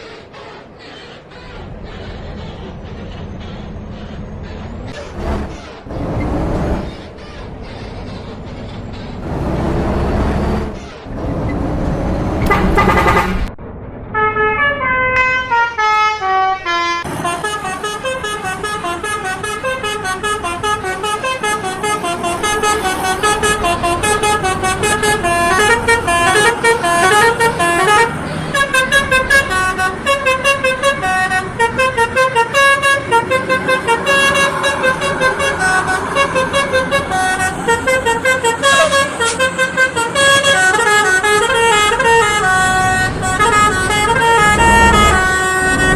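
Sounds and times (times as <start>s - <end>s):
multi-tone musical air horn: 12.4s - 13.5s, 14.2s - 45.9s
loud rumbling noise: 21.6s - 45.9s.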